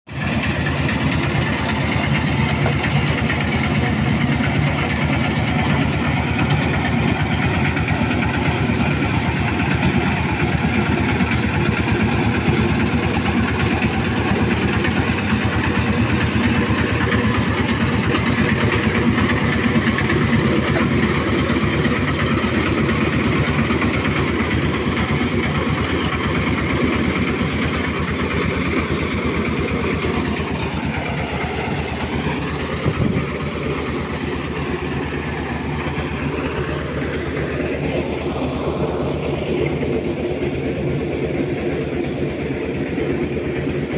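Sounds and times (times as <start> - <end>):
old engine running: 0.1 - 43.9.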